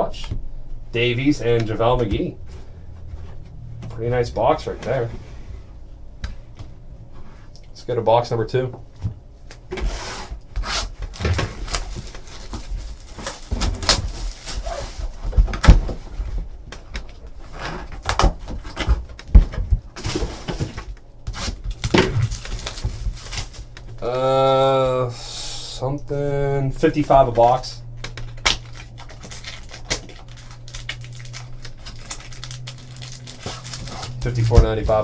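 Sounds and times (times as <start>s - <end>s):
faint low hum: 0.0s - 35.0s
card packs crinkling and tearing: 10.6s - 15.8s, 20.0s - 24.8s, 26.8s - 35.0s.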